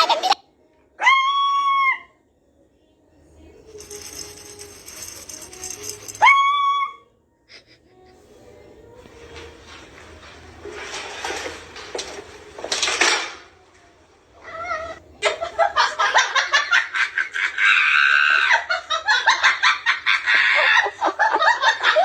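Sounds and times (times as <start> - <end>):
cat meowing: 14.4 - 15.0
cat yowling: 14.4 - 15.0.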